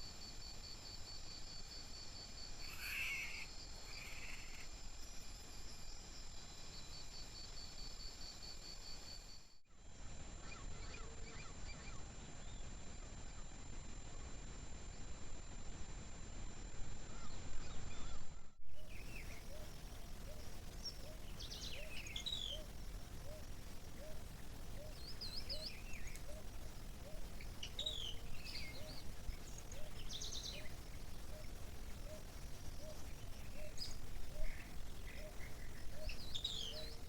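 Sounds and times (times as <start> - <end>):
birds chirping and trilling: 17.0 - 37.0.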